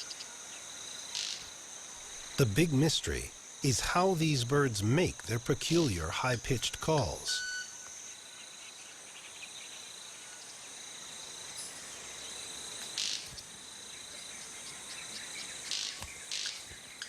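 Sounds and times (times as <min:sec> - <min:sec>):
insects buzzing: 0:00.0 - 0:17.0
soft background hiss: 0:00.1 - 0:07.4.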